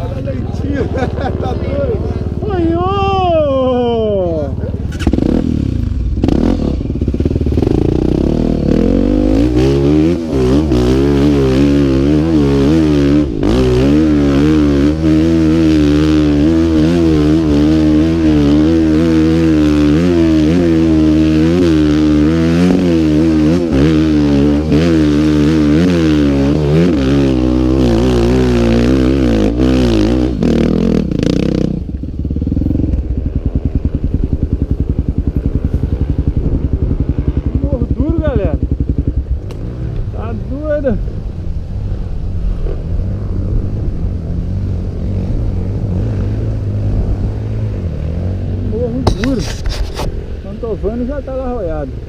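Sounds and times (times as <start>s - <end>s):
motorcycle engine revving: 0.0s - 52.0s
motorcycle clattering: 4.6s - 6.4s.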